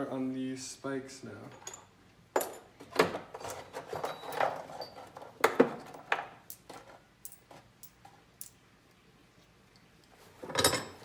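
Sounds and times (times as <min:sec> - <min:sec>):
metal knocks and clinks: 0:03.4 - 0:05.2.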